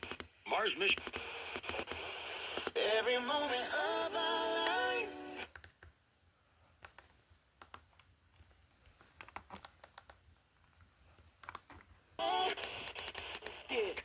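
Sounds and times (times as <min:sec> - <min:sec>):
faint irregular clicks: 0:06.8 - 0:14.0.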